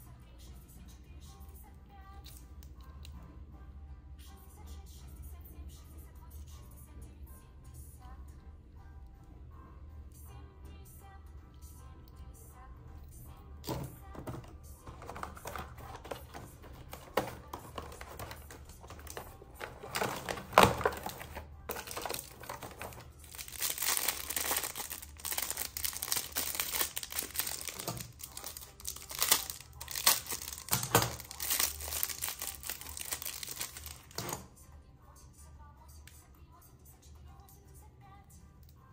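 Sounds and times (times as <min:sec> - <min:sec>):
packaging rustling and crinkling: 0:13.7 - 0:34.4.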